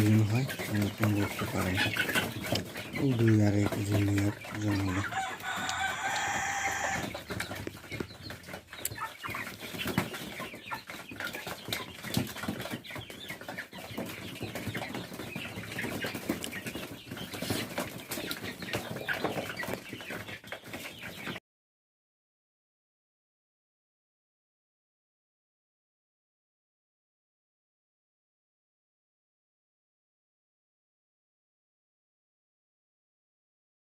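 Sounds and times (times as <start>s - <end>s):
chickens clucking: 0.0s - 21.4s
loud drawn-out chicken call: 4.8s - 7.2s.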